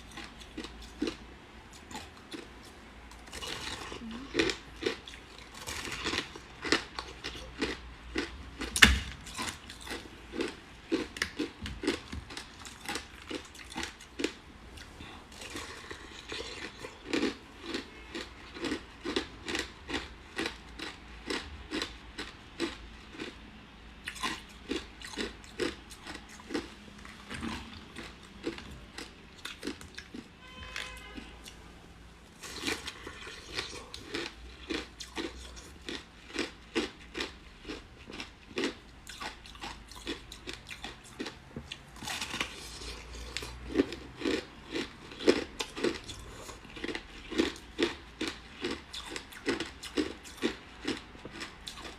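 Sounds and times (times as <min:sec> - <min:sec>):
ice being chewed: 0:00.0 - 0:23.4, 0:24.0 - 0:31.6, 0:32.4 - 0:51.9.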